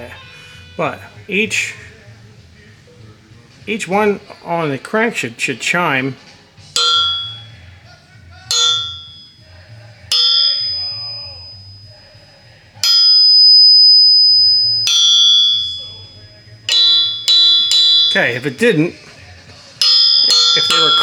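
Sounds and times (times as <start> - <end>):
struck crankshaft ringing: 6.6 - 7.8, 8.5 - 18.8, 19.8 - 21.0.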